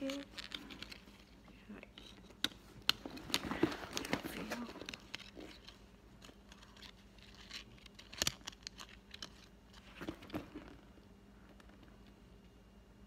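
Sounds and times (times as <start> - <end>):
handbag and paper tag rustling: 3.0 - 10.8.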